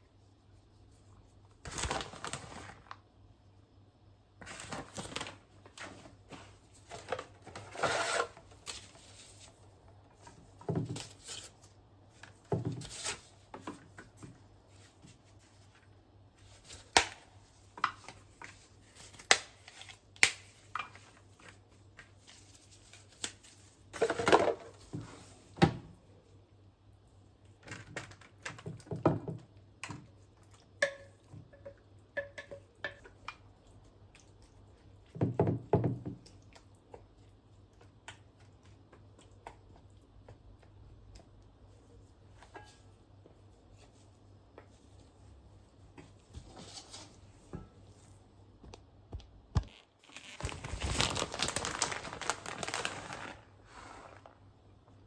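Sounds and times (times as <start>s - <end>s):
rustling and rubbing: 43.6s - 48.2s.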